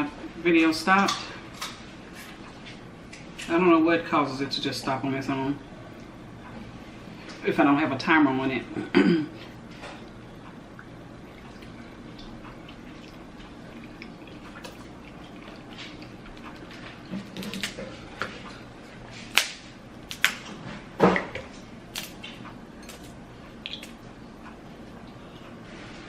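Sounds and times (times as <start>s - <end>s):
low background hum: 0.0s - 26.0s
wet eating clicks and smacks: 10.0s - 17.8s, 21.9s - 25.2s.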